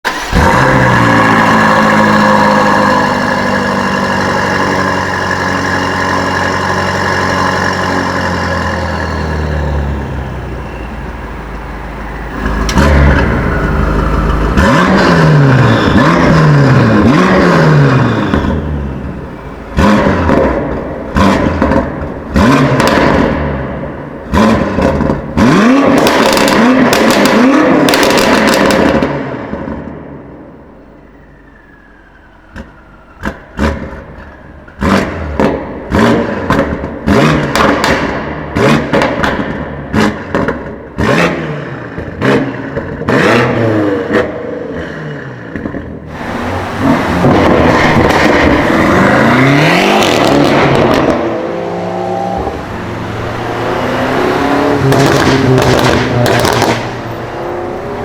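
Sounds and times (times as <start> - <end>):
car engine revving: 0.0 - 58.0
exhaust pops and bangs: 18.4 - 30.1, 32.5 - 43.2, 54.8 - 57.2.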